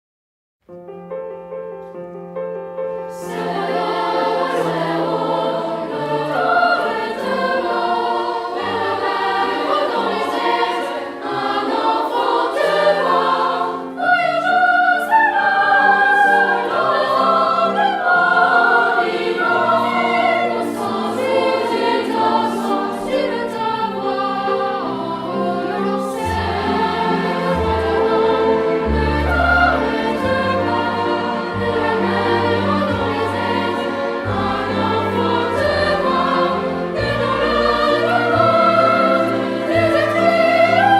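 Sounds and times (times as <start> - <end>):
instrumental accompaniment: 0.6 - 40.9
choir singing: 3.0 - 40.9.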